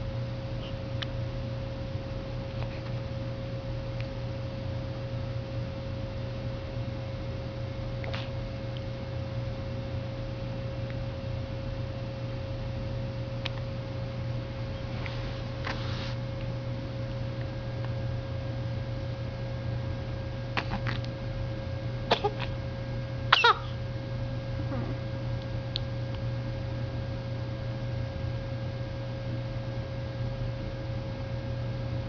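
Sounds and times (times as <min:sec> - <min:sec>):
electrical hum: 0:00.0 - 0:32.0
soft hiss: 0:14.7 - 0:16.2.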